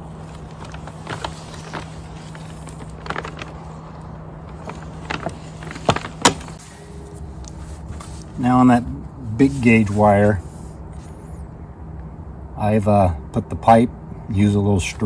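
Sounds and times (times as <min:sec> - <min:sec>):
electrical wire clicking and knocking: 0:00.0 - 0:06.6
steady low hum: 0:00.0 - 0:15.0.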